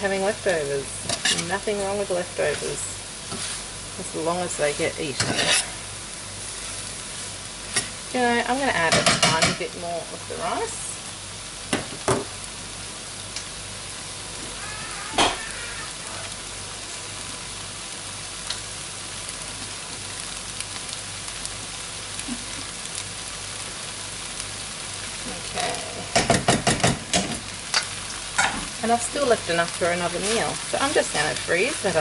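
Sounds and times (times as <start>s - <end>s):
food sizzling in a frying pan: 0.0s - 32.0s.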